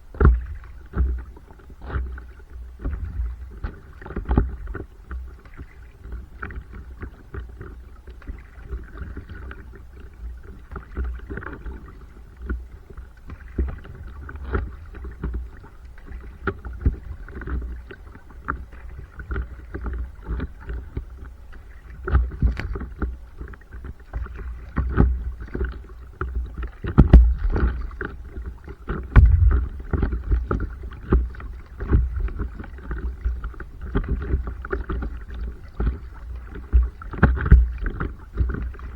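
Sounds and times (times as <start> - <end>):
water splashing around paddleboard: 0.0 - 38.9
knocks on paddleboard: 26.9 - 28.1, 29.0 - 31.2, 37.3 - 37.8
low rumble: 27.0 - 28.0, 29.1 - 30.9.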